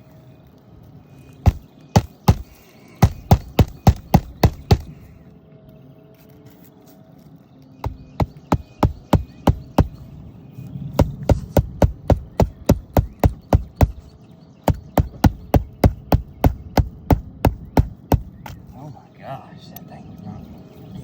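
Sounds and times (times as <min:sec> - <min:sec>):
hammer striking nail into shingle: 0:01.4 - 0:05.0, 0:07.8 - 0:10.0, 0:11.0 - 0:18.6.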